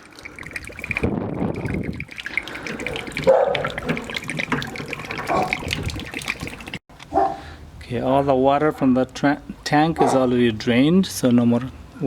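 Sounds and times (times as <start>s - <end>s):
water gushing from a valve: 0.0s - 6.8s.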